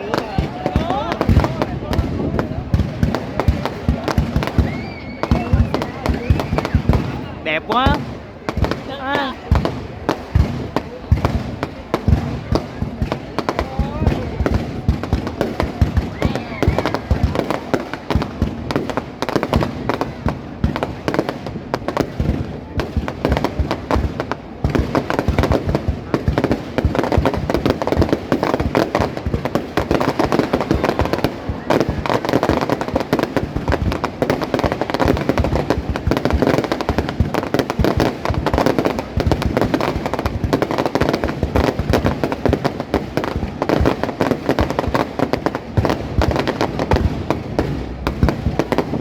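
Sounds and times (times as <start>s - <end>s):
fireworks bursting: 0.0s - 49.0s.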